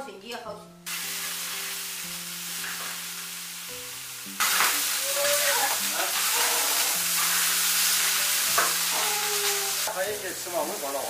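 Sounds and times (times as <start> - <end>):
soft background music: 0.0 - 11.0
steady sizzling hiss: 0.8 - 11.0.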